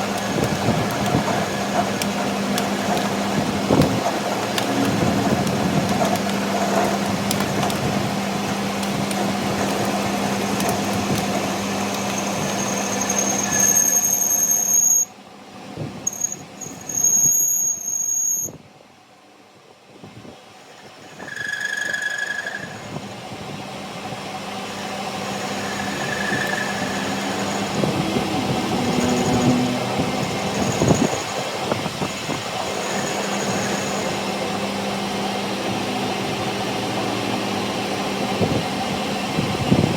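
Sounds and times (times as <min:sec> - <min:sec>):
shop machinery motor hum: 0:00.0 - 0:13.2, 0:24.5 - 0:31.6
high-pitched metal squeal: 0:12.2 - 0:15.1, 0:16.1 - 0:18.6, 0:21.1 - 0:23.0, 0:25.2 - 0:31.5, 0:32.6 - 0:34.2.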